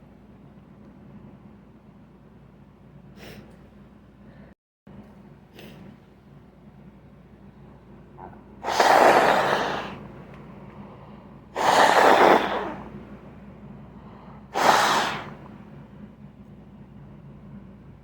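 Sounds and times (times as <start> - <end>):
person blowing nose: 8.6 - 10.1, 11.6 - 13.0, 14.5 - 15.5.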